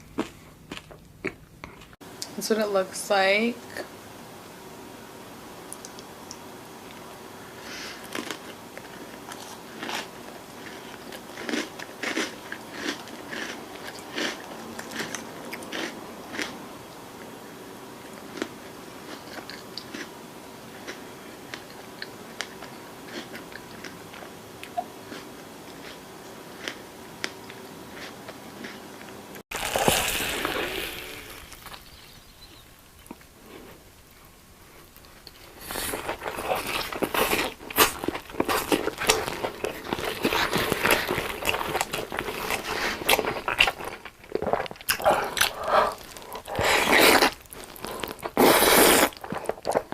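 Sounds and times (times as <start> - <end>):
crunchy chewing: 0.0 - 2.0, 7.9 - 16.6, 18.0 - 49.9
noisy burst: 29.5 - 34.6.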